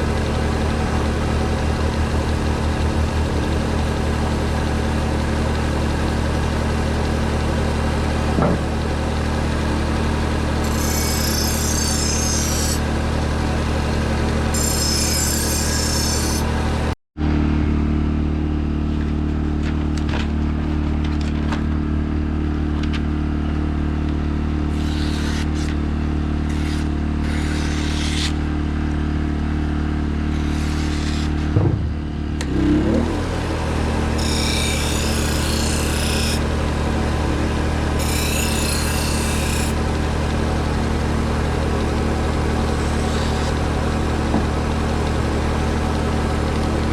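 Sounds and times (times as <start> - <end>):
belt grinder motor running: 0.0 - 7.0, 9.0 - 17.0, 24.7 - 25.7, 26.4 - 28.4, 30.2 - 31.6, 32.4 - 46.9
steel hissing on grinding belt: 10.6 - 12.8.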